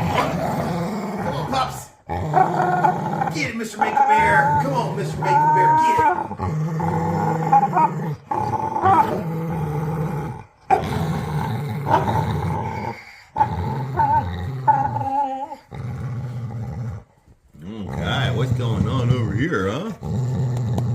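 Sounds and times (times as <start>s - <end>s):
dog growling: 0.0s - 20.9s
dog whining: 3.8s - 6.4s, 7.0s - 9.3s, 13.9s - 15.7s.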